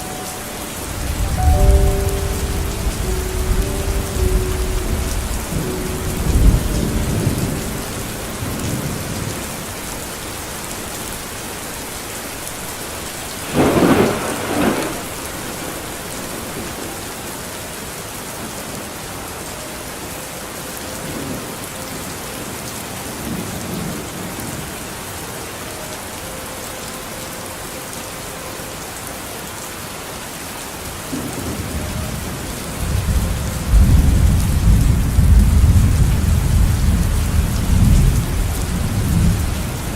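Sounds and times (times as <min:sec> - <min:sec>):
steady rain: 0:00.0 - 0:39.9
low rolling thunder: 0:00.7 - 0:09.9, 0:13.3 - 0:17.2, 0:31.2 - 0:39.9
sharp thunder clap: 0:13.4 - 0:15.8.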